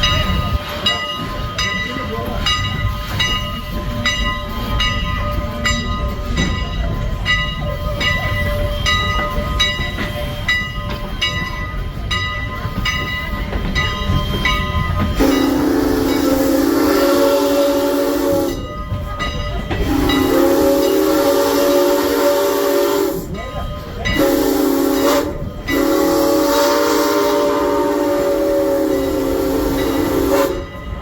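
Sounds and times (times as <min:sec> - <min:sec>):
chime steam whistle: 0:00.0 - 0:31.0
locomotive bell ringing: 0:00.0 - 0:31.0
train rumbling: 0:00.0 - 0:31.0.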